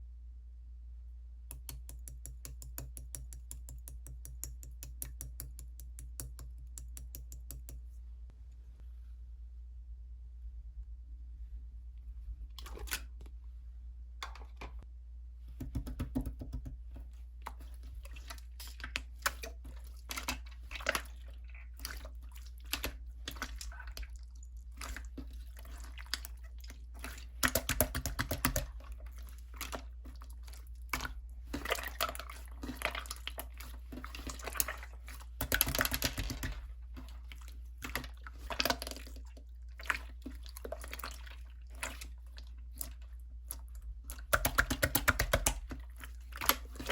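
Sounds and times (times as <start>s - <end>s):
slime squishing and crackling: 17.6s - 46.9s.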